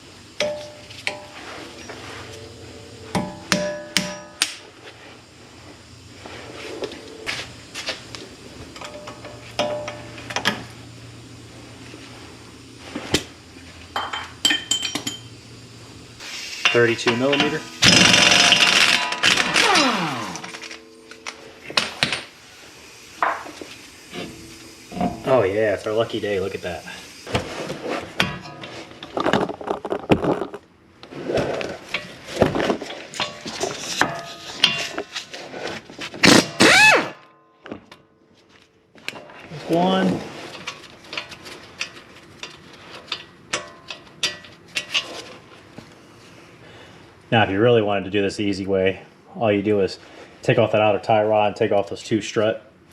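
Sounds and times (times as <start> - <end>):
impact wrench hammering: 3.2 - 4.3, 16.6 - 22.3.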